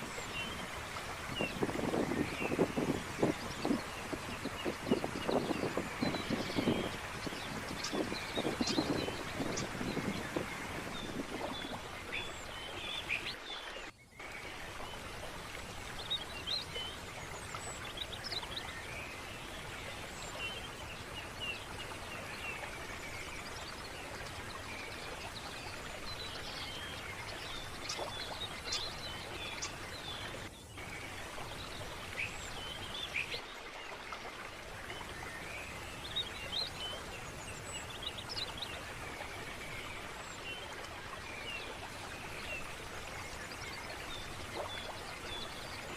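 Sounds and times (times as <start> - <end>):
small birds chirping: 0.0 - 13.4
stream flowing: 0.0 - 45.9.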